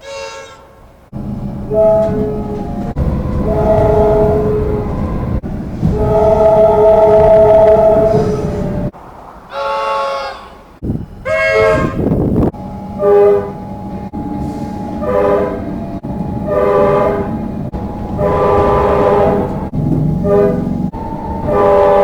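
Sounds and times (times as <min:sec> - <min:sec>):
train horn short blasts: 0:00.0 - 0:00.8, 0:01.7 - 0:02.8, 0:03.4 - 0:08.8, 0:09.5 - 0:10.7, 0:11.3 - 0:12.2, 0:12.9 - 0:13.6, 0:14.4 - 0:15.8, 0:16.4 - 0:17.5, 0:18.2 - 0:22.0
low rumble of train running: 0:00.0 - 0:22.0.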